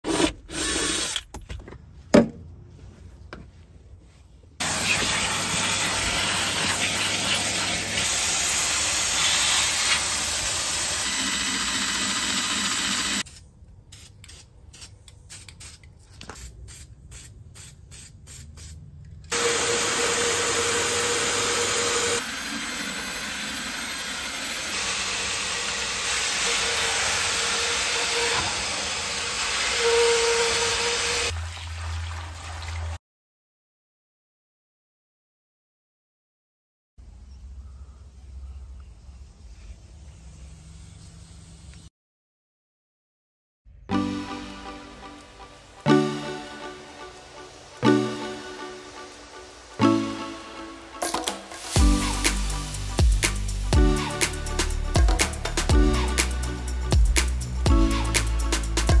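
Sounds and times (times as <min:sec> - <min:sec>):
cleaning equipment rushing hiss: 0:04.6 - 0:13.2, 0:19.3 - 0:31.3, 0:51.4 - 0:53.7.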